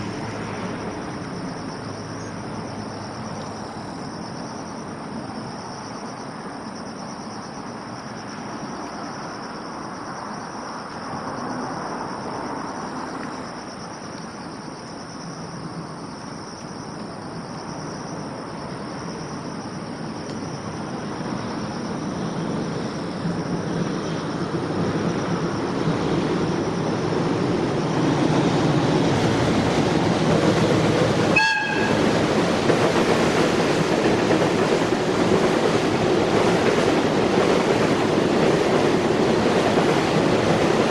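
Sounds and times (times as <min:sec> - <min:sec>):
insects trilling: 0:00.0 - 0:40.9.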